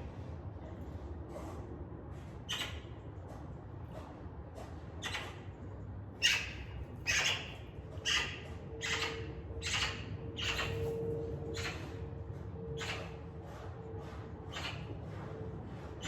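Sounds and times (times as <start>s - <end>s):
magpie squawking: 6.2s - 7.5s, 8.1s - 10.8s.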